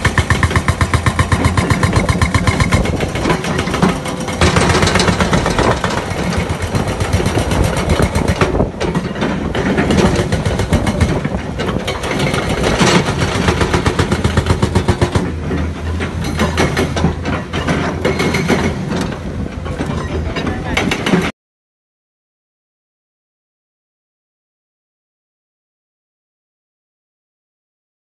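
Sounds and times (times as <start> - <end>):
diesel engine under load: 0.0 - 21.3
rattling hard knocks: 0.0 - 21.3.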